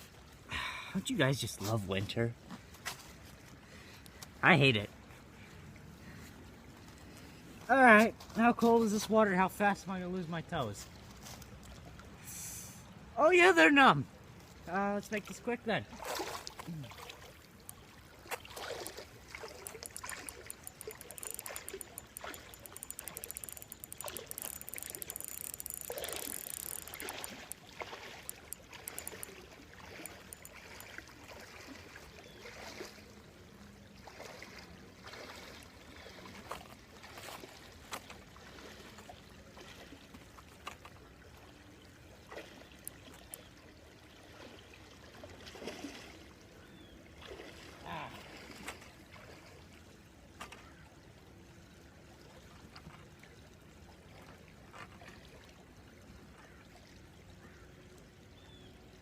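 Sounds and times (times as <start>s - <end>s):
creek water flowing: 0.0s - 59.0s
person wading through water: 15.8s - 50.0s.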